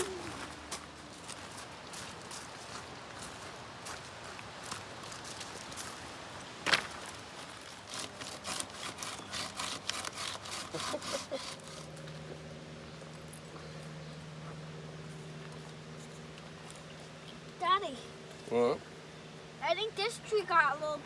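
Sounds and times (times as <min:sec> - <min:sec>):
low steady hum: 0:00.0 - 0:21.0
wood cracking: 0:06.6 - 0:07.1
rasping saw strokes: 0:07.8 - 0:12.4.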